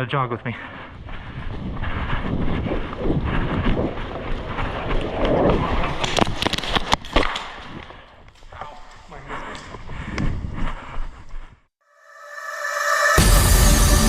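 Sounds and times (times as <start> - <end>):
wind buffeting microphone: 0.0 - 6.0.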